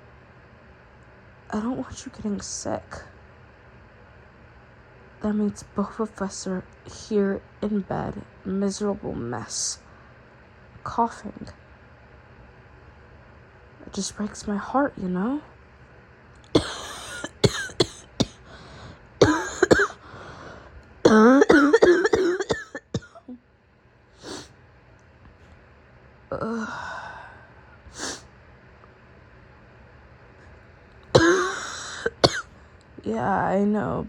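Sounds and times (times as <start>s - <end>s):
woman coughing: 16.6s - 18.4s, 19.2s - 20.0s, 21.1s - 23.4s, 31.2s - 32.5s
woman breathing: 18.4s - 19.0s, 20.0s - 20.8s, 31.4s - 32.2s.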